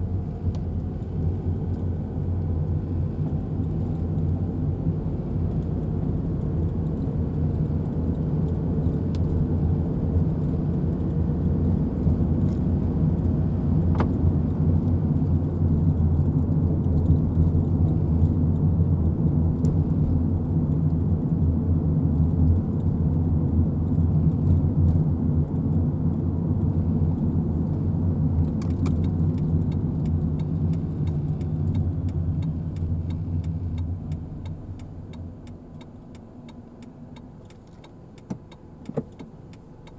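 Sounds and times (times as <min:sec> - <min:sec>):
car engine and road noise: 0:00.0 - 0:39.9
faint clicks and rattles: 0:23.9 - 0:39.9.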